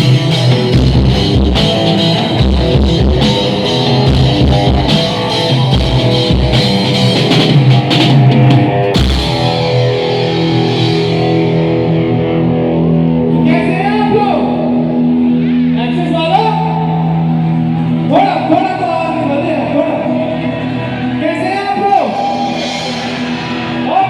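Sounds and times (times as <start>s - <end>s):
drum kit: 0.0s - 13.8s, 21.9s - 24.0s
rock guitar: 0.0s - 24.0s.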